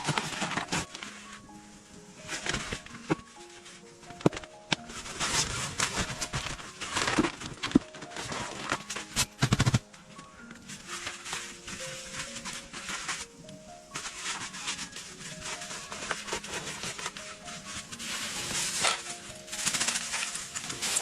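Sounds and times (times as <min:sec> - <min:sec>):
rustling and handling noises: 0:00.0 - 0:21.0
soft music of held notes: 0:00.0 - 0:21.0.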